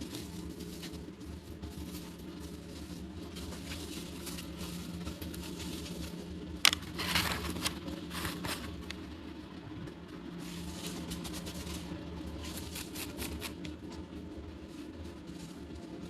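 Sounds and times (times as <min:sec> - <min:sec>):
packaging rustling: 0:06.6 - 0:09.0.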